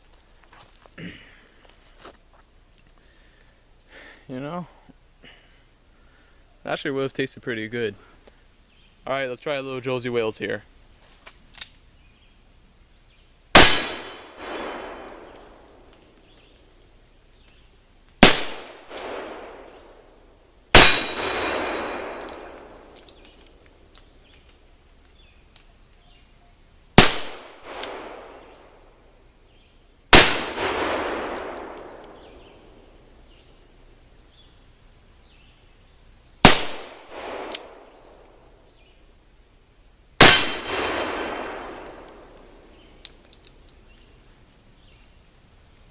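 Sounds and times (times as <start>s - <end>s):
gunshot echo: 13.6s - 15.8s, 18.2s - 20.0s, 20.7s - 23.0s, 27.0s - 28.8s, 30.1s - 32.6s, 36.4s - 38.0s, 40.2s - 42.7s.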